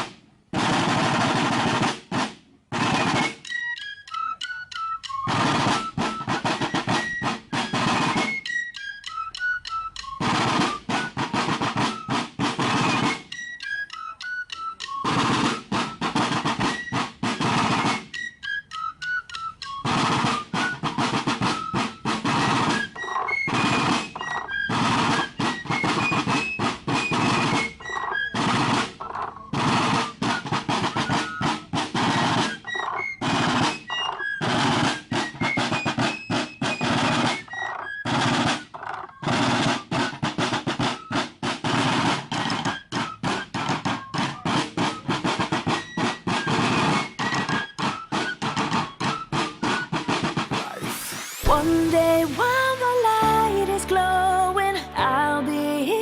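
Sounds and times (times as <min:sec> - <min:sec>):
heavy drum and snare hits: 0:00.0 - 0:03.8, 0:04.4 - 0:18.4, 0:19.0 - 0:55.0
stepping melody line: 0:03.0 - 0:29.5, 0:47.7 - 0:56.0.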